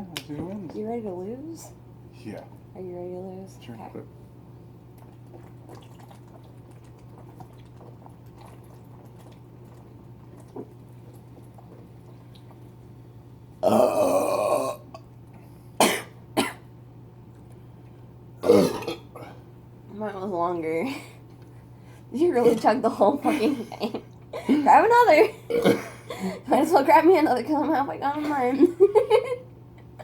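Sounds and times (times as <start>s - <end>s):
person burping: 13.6s - 15.0s, 18.4s - 19.4s, 25.5s - 26.0s.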